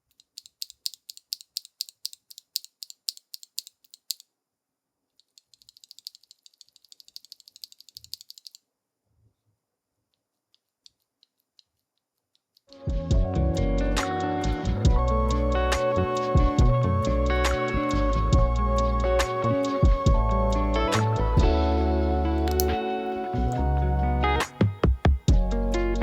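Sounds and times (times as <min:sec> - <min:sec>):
keyboard switches clacking: 0:22.5 - 0:22.8.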